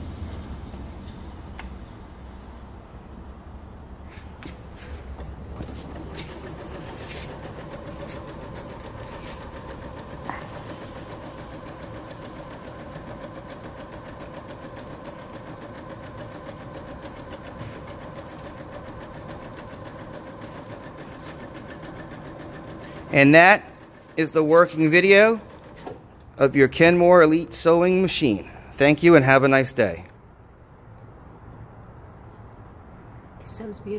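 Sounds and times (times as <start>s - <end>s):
sewing machine stitching: 5.1s - 27.0s.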